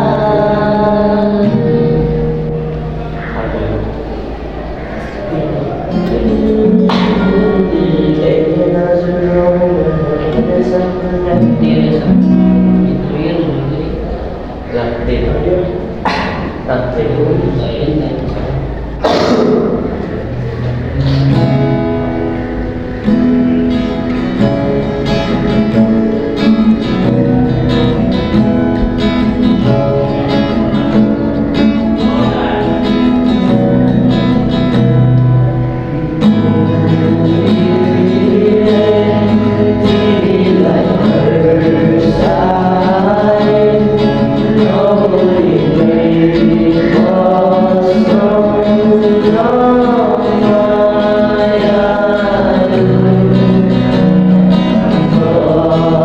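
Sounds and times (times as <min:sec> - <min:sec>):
person singing: 0:00.0 - 0:03.8, 0:05.9 - 0:13.3, 0:25.0 - 0:56.0
guitar: 0:00.0 - 0:56.0.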